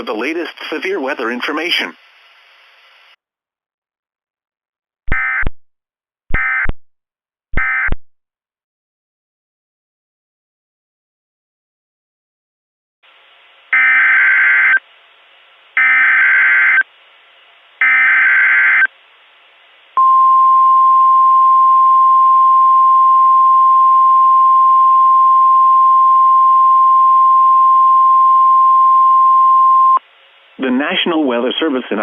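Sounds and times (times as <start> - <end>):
steady warning alarm tone: 13.7 - 14.8, 15.8 - 16.9, 17.8 - 18.9.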